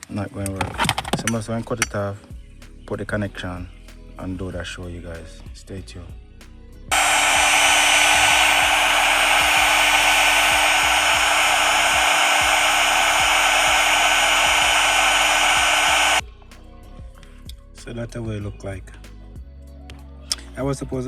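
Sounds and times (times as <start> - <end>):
heat gun blowing: 6.9 - 16.2.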